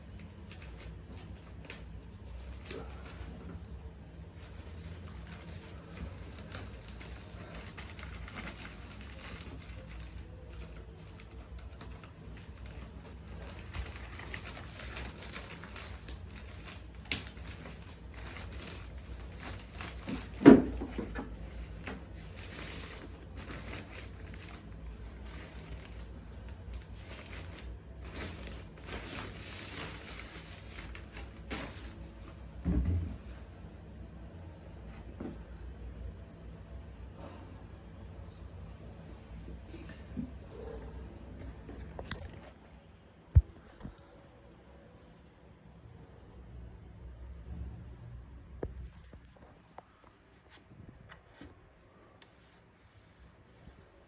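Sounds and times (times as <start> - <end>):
packaging rustling and crinkling: 0.0 - 32.5.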